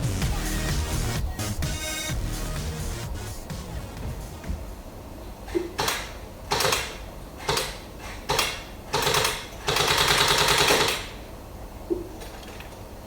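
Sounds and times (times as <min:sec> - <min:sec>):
electric bb gun firing bursts: 0:05.5 - 0:11.3.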